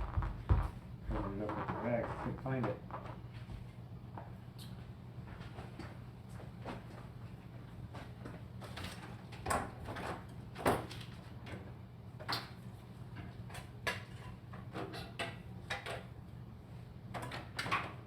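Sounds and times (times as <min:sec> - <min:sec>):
steady low hum: 0:00.0 - 0:05.4.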